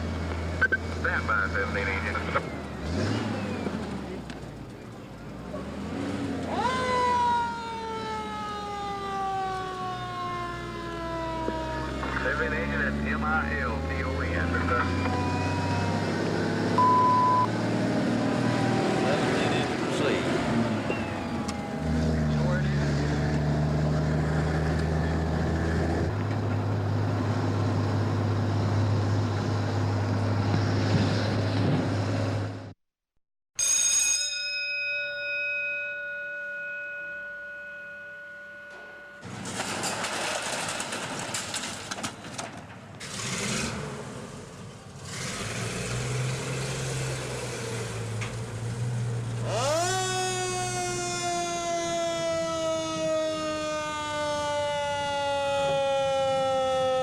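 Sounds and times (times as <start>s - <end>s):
heavy vehicle engine running: 0.0s - 6.7s, 11.1s - 32.7s
fire engine siren wailing: 0.2s - 3.8s, 6.4s - 26.1s, 38.1s - 39.4s, 49.4s - 57.0s
metallic ring: 33.6s - 39.3s.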